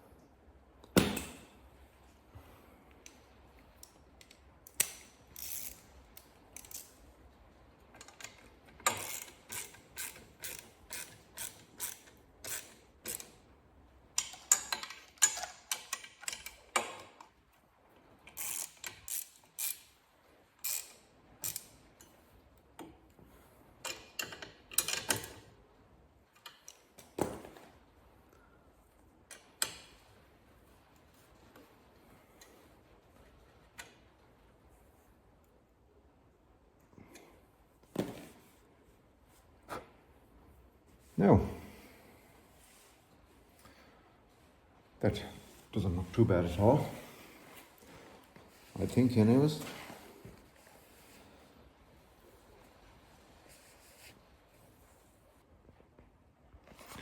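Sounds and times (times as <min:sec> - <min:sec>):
ratchet wrench clicking: 0:04.7 - 0:05.9, 0:08.9 - 0:13.3, 0:18.4 - 0:19.8, 0:20.6 - 0:21.7.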